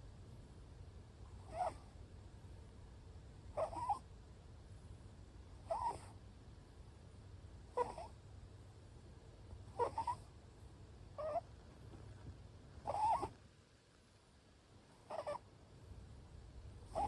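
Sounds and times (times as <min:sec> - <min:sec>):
faint low hum: 0:00.0 - 0:17.0
cat snoring with squeaky snores: 0:01.4 - 0:01.9, 0:03.5 - 0:04.1, 0:05.6 - 0:06.2, 0:07.7 - 0:08.2, 0:09.7 - 0:10.3, 0:11.2 - 0:11.4, 0:12.8 - 0:13.4, 0:15.0 - 0:15.4, 0:16.8 - 0:17.0.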